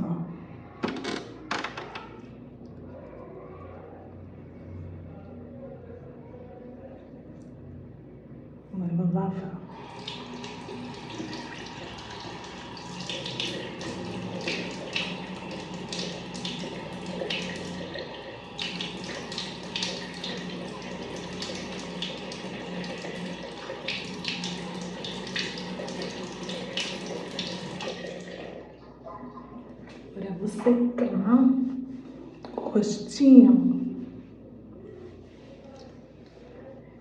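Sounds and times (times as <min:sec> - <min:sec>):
sink tap running: 0:09.7 - 0:28.6
water splashing on face: 0:09.8 - 0:28.6.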